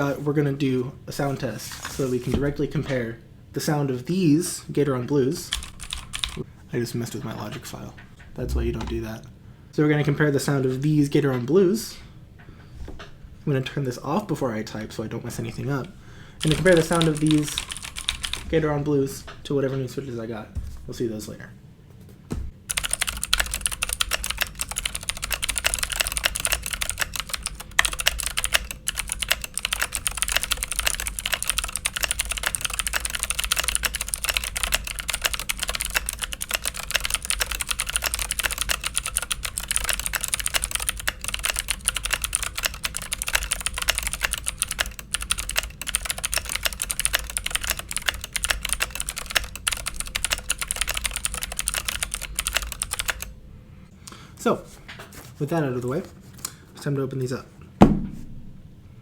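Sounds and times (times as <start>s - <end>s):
fast clicky keyboard typing: 5.5s - 6.4s, 16.4s - 18.7s, 22.7s - 53.3s.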